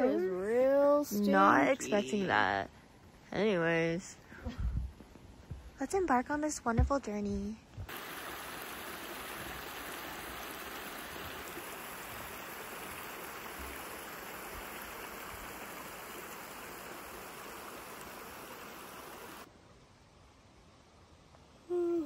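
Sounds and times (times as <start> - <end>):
running water rushing: 7.9 - 19.5.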